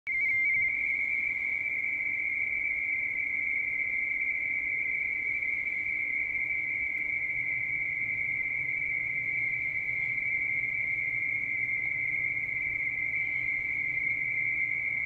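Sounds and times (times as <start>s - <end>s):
two-tone data tone: 0.1s - 1.8s.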